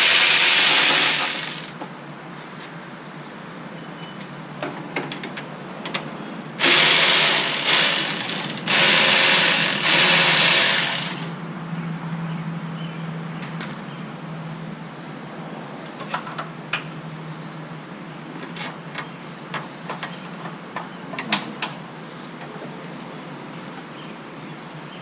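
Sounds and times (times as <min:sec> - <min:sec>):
power ratchet spinning: 0:00.0 - 0:01.8, 0:06.6 - 0:11.4.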